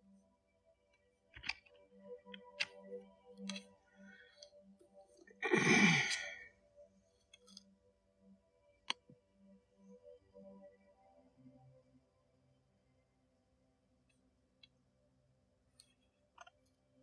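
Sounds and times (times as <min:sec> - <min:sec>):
faint background tone: 0:00.0 - 0:17.0
breathy sigh: 0:05.4 - 0:06.5.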